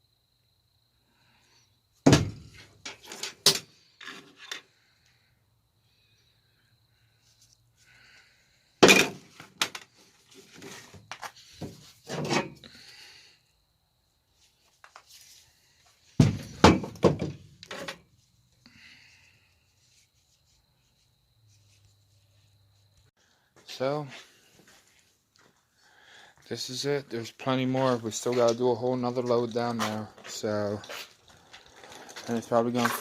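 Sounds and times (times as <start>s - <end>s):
hard objects knocking and thudding: 2.0s - 3.6s, 8.8s - 9.8s, 16.2s - 18.0s.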